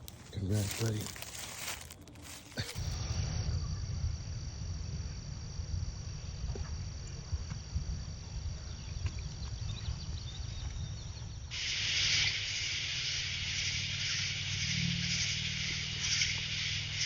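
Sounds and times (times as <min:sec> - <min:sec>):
faint insect trill: 0:00.0 - 0:17.0
loud insect chorus hiss: 0:00.0 - 0:17.0
wind rumble on microphone: 0:02.8 - 0:11.5.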